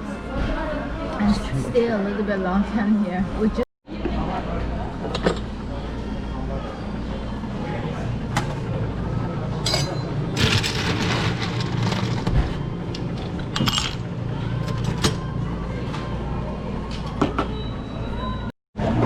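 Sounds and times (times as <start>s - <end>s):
faint indistinct chatter: 3.9s - 10.4s
tableware clinking: 9.6s - 12.2s, 13.4s - 14.1s.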